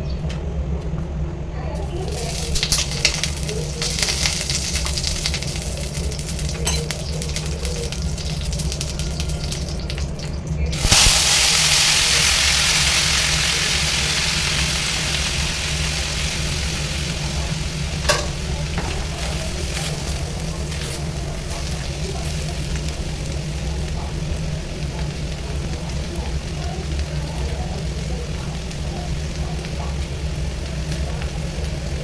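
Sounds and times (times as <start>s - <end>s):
steady low hum: 0.0s - 7.6s, 15.0s - 32.0s
food sizzling in hot fat: 1.7s - 32.0s.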